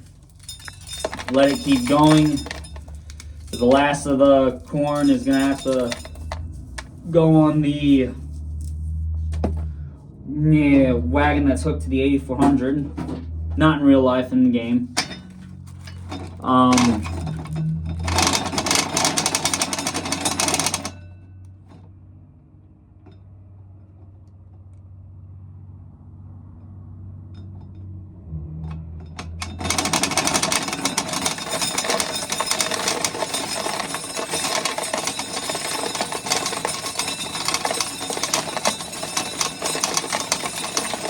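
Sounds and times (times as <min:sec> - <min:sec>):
corn sheller rattling grind: 0:00.0 - 0:08.8, 0:14.9 - 0:21.0, 0:29.2 - 0:41.0.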